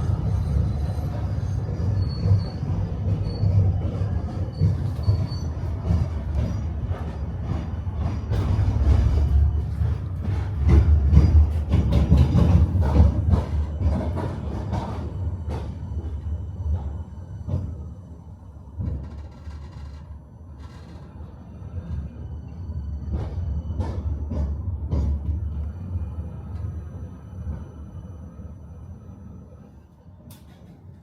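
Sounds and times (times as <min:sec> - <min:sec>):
faint high wheel squeal: 0:00.0 - 0:07.2
tram rumbling on track: 0:00.0 - 0:31.0.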